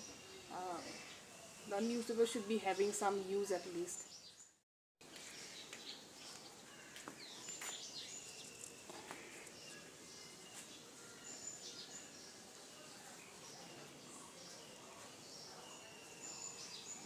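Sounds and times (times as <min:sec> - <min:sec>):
low steady hiss: 0:00.0 - 0:04.3.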